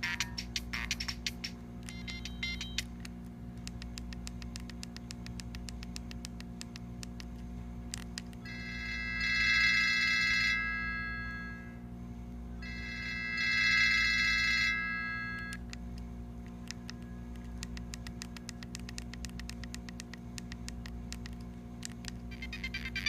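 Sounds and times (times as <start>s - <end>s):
beeping electronic melody: 0.0s - 2.9s, 8.5s - 11.8s, 12.6s - 15.6s, 22.3s - 23.0s
clock-like ticks: 0.0s - 7.3s
buzzing electronic chord: 8.4s - 11.9s, 12.6s - 15.6s
short tone figure: 8.5s - 11.8s, 12.6s - 15.6s.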